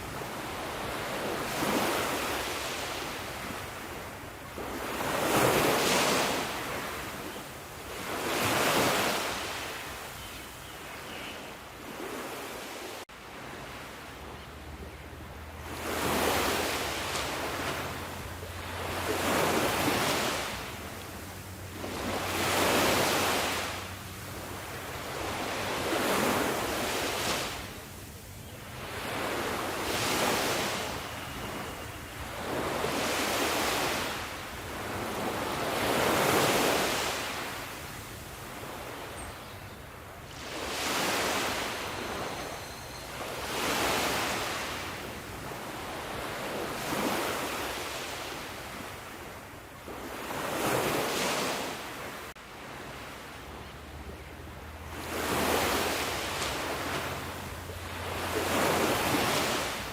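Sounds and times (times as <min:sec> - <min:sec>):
sea waves breaking: 0:00.0 - 0:07.3, 0:07.9 - 0:10.0, 0:15.3 - 0:28.1, 0:28.7 - 0:39.2, 0:40.0 - 0:59.9.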